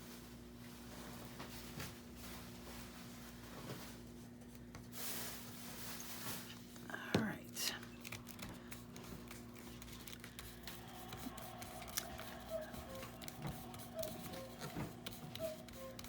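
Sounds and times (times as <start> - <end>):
faint steady hum: 0.0 - 16.0
paper clicks and rustles: 7.7 - 16.0.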